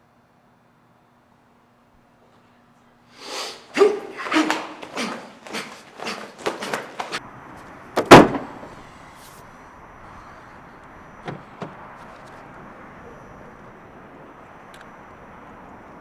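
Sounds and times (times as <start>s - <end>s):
door slamming shut: 8.0s - 8.6s.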